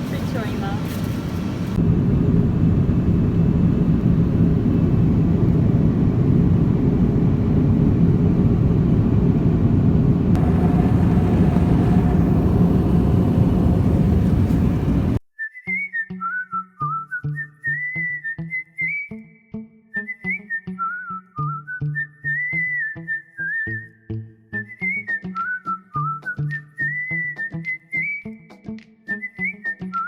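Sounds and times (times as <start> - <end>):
jet airliner engine rumble: 0.0 - 15.2
whistled music with a beat: 15.3 - 30.0.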